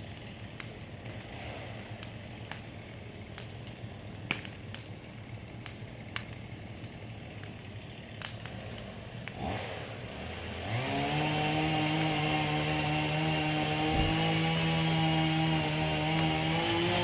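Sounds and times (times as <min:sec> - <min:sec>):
light clicks and crackles: 0:00.0 - 0:09.4
chainsaw engine running: 0:00.3 - 0:04.0, 0:05.9 - 0:17.0.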